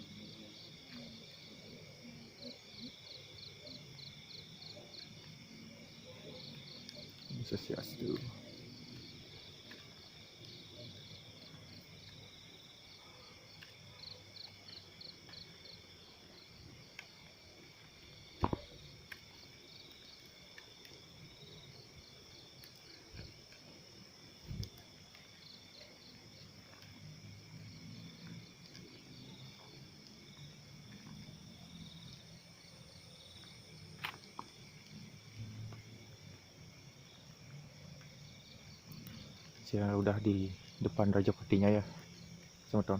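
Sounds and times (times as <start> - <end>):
crickets chirping: 0.0 - 42.9
short thumps: 18.4 - 18.7.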